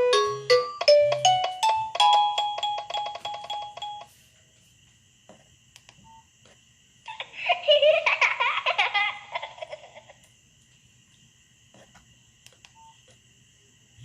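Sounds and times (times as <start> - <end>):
warbling ringtone: 0.0 - 4.1
synthesized ringtone: 0.0 - 4.2.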